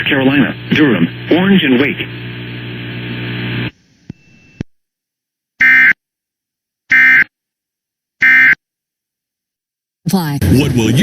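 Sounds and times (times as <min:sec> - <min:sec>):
steady broadcast hum: 0:00.0 - 0:04.7.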